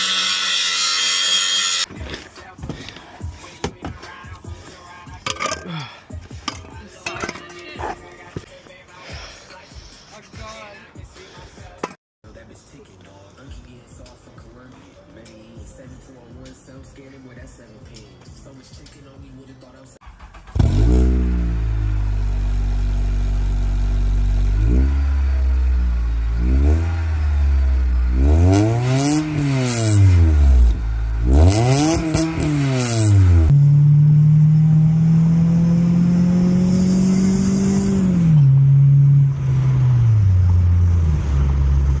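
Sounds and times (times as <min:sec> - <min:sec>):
car engine starting and revving: 0:20.0 - 0:42.0.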